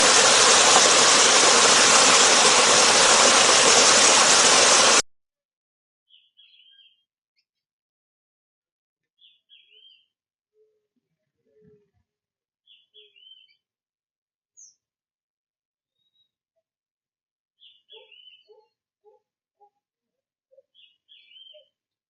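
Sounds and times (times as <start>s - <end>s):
loud steady hiss: 0.0s - 5.0s.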